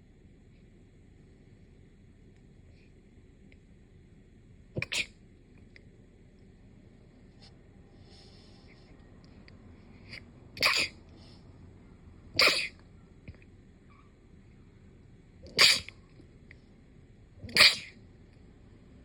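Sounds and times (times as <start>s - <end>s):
sharp sneezes: 4.8s - 5.2s, 10.1s - 11.0s, 12.3s - 12.8s, 15.4s - 16.0s, 17.4s - 18.0s.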